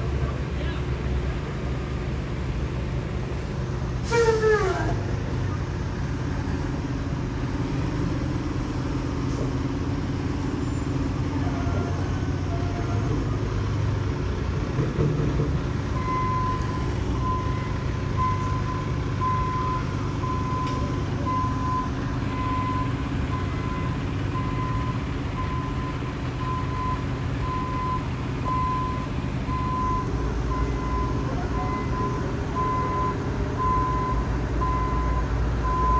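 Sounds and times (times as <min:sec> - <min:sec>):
heavy machinery engine rumble: 0:00.0 - 0:35.9
reversing alarm beeping: 0:15.9 - 0:35.9.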